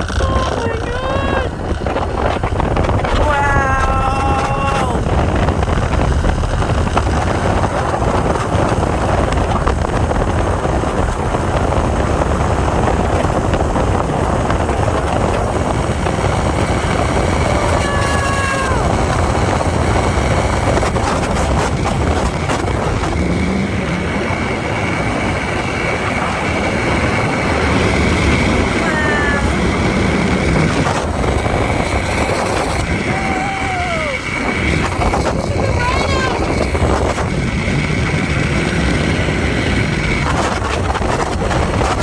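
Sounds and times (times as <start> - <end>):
wind rushing over microphone: 0.0 - 42.0
zipline trolley on cable: 0.0 - 42.0
high whine: 15.0 - 41.3.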